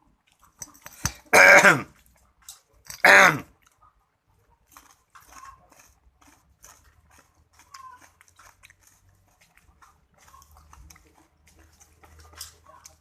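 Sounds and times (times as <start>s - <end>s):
person chewing root: 0.0s - 13.0s
wet mouth clicks: 0.3s - 3.8s.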